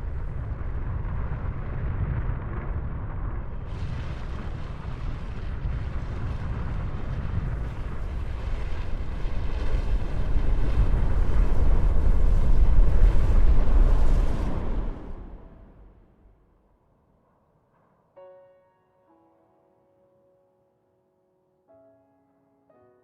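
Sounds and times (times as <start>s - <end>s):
volcanic eruption rumble: 0.0s - 16.0s.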